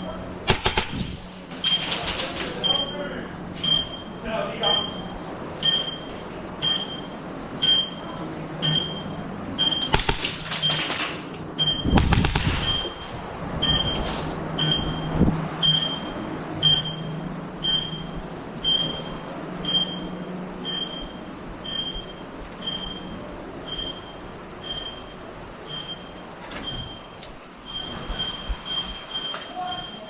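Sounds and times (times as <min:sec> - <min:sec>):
run of sharp cracks: 0:00.5 - 0:02.6, 0:09.8 - 0:13.0
loud thump or rush: 0:12.0 - 0:12.8.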